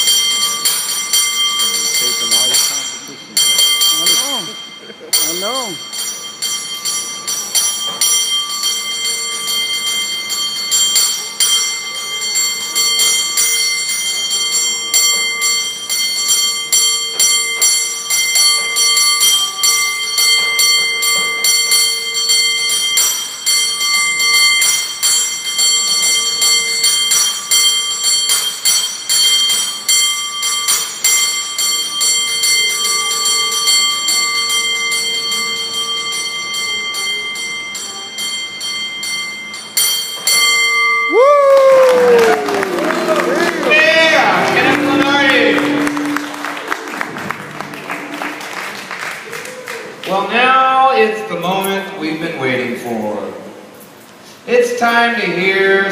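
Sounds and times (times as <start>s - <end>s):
cable car bell clanging: 0.0s - 48.9s.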